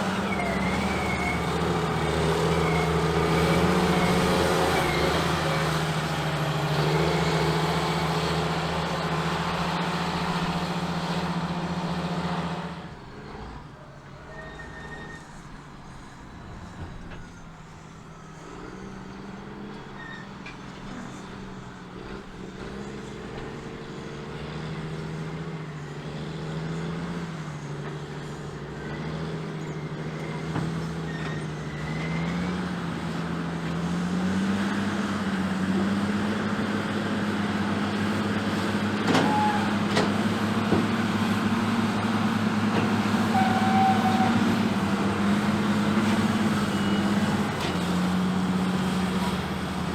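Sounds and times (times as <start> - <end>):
diesel engines under load: 0.0 - 49.9.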